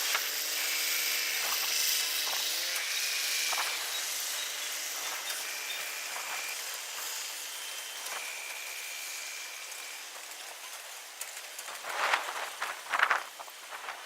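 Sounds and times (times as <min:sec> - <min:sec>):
thin high tone: 0:00.6 - 0:09.7.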